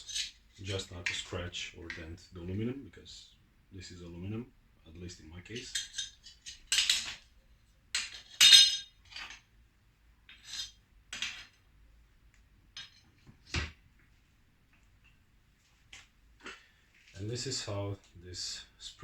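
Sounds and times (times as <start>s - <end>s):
metal tools clinking and clanking: 0.0s - 0.4s, 5.6s - 7.3s, 8.0s - 9.5s, 10.3s - 11.6s, 12.7s - 13.1s.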